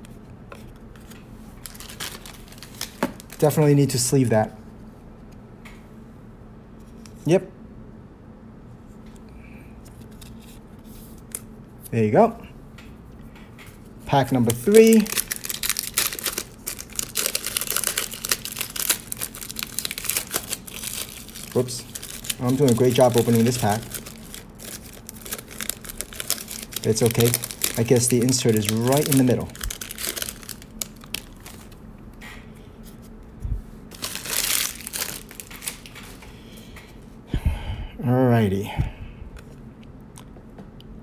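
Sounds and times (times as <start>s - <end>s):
wrapper crinkling and tearing: 1.0s - 3.6s, 14.2s - 31.8s, 33.9s - 36.2s.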